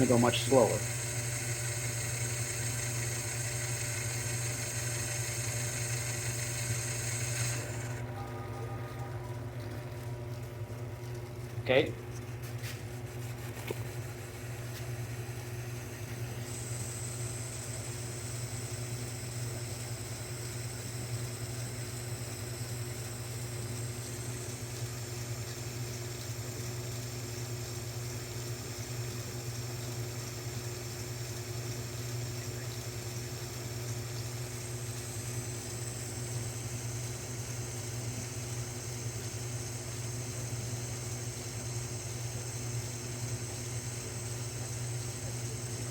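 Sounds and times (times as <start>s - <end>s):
metal lathe running: 0.0s - 8.6s, 14.2s - 45.9s
faint high whine: 0.0s - 10.1s
low motor hum: 0.0s - 45.9s.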